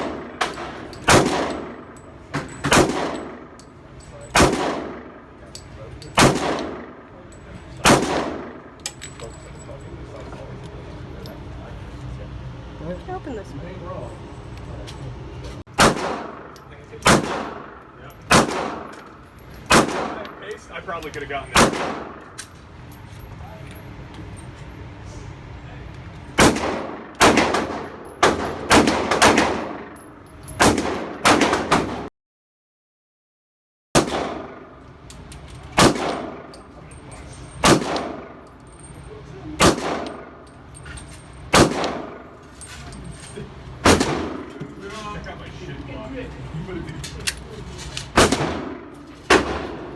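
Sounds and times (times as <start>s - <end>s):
rifle shots echoing: 0.0s - 2.0s, 2.6s - 3.6s, 4.3s - 5.3s, 6.2s - 7.1s, 7.8s - 8.8s, 15.7s - 19.0s, 19.6s - 20.4s, 21.6s - 22.4s, 26.4s - 30.0s, 30.6s - 32.1s, 34.0s - 34.8s, 35.8s - 36.5s, 37.6s - 38.4s, 39.6s - 40.4s, 41.5s - 42.3s, 43.8s - 44.6s, 48.1s - 49.9s.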